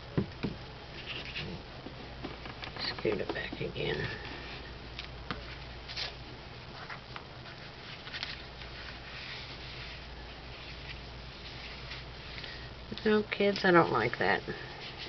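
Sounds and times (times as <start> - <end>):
air conditioner hum: 0.0 - 15.0
paper rustling: 0.9 - 3.0, 5.4 - 12.6.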